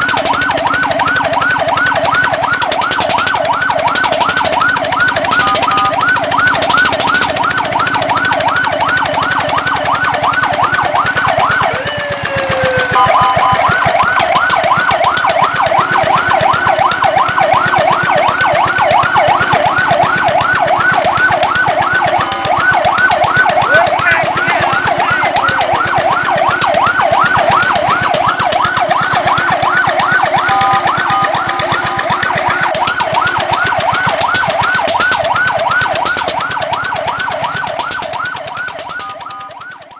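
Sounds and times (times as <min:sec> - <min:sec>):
fire truck siren yelp: 0:00.0 - 0:39.9
short steady siren tones: 0:00.0 - 0:39.9.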